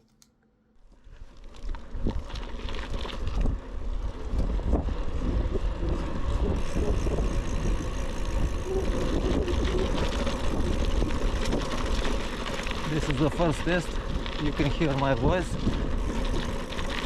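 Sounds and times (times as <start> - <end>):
wind buffeting microphone: 1.9 - 17.0.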